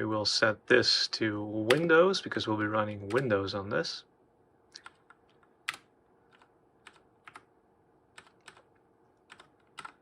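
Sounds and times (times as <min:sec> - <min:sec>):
keyboard keys clicking: 0:04.8 - 0:07.5, 0:08.1 - 0:10.0.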